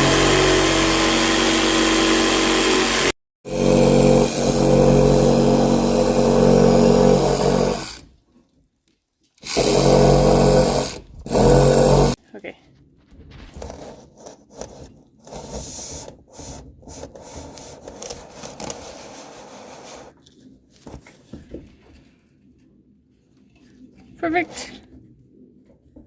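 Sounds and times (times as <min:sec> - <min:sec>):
power tool motor running: 0:00.0 - 0:08.0, 0:09.4 - 0:12.2.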